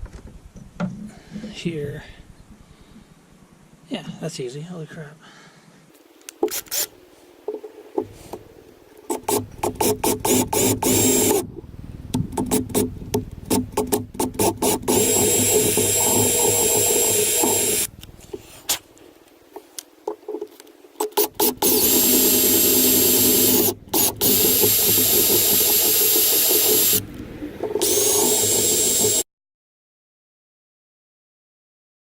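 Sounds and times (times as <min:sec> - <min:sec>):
power drill boring into metal: 0:06.5 - 0:06.9, 0:09.1 - 0:11.4, 0:14.2 - 0:17.9, 0:21.0 - 0:27.0, 0:27.8 - 0:29.2.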